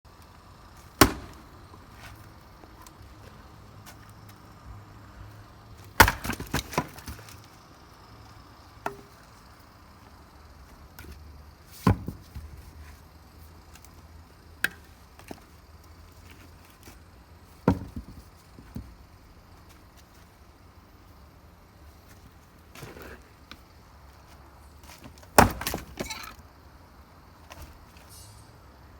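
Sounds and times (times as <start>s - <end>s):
axe striking log: 0.9s - 2.1s, 5.9s - 7.2s, 8.8s - 9.1s, 11.8s - 12.2s, 17.6s - 18.2s, 25.3s - 26.4s
split wood pieces clattering: 5.9s - 7.4s, 24.8s - 26.4s.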